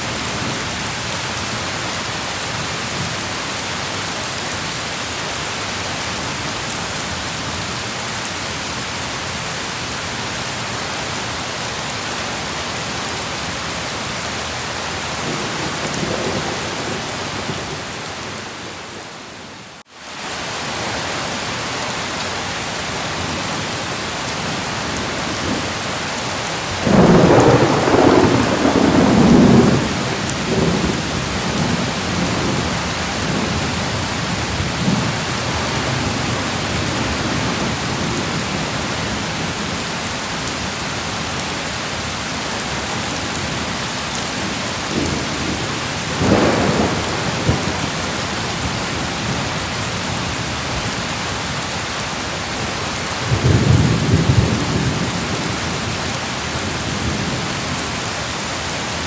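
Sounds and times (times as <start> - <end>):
heavy rain hissing: 0.0 - 59.0
thunder rolling: 15.2 - 19.2, 26.8 - 33.6, 44.5 - 48.7.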